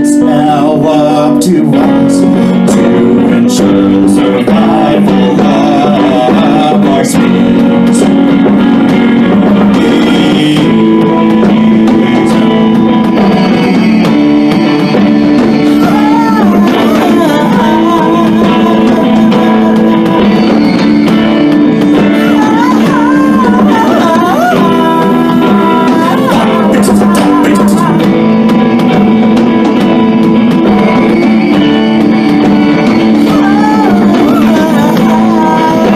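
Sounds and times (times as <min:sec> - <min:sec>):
live band playing: 0:00.0 - 0:35.9
pitch-bending guitar lines: 0:00.0 - 0:35.9.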